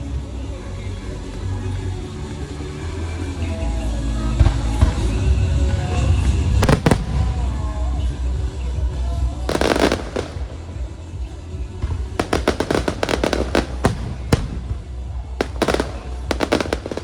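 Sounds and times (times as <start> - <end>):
low rumble: 4.1 - 17.0
fireworks bangs and crackling: 4.4 - 8.5, 9.2 - 17.0.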